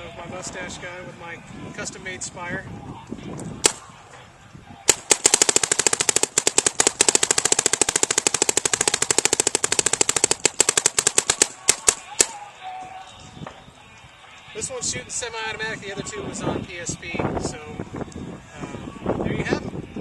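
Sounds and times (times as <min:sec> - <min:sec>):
paintball marker firing: 0:03.6 - 0:03.9, 0:04.9 - 0:12.4.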